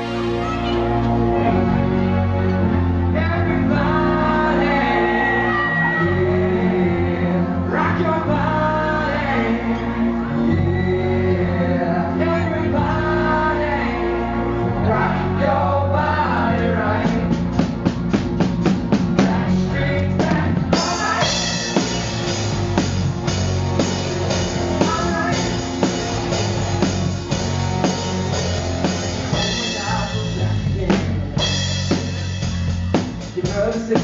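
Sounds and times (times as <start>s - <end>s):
live band playing: 0.0s - 34.0s
drum hits: 20.2s - 34.0s.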